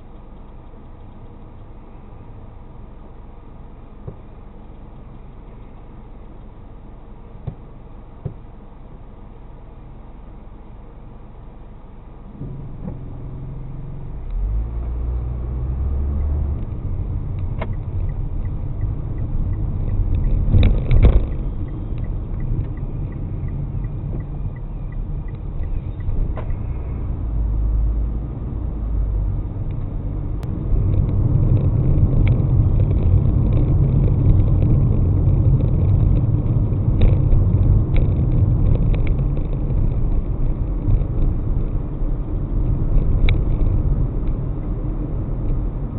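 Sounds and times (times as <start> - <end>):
sharp clicks: 0.0 - 1.8
quick light ticks: 0.0 - 2.0, 4.6 - 6.6
car road and engine rumble: 0.0 - 45.9.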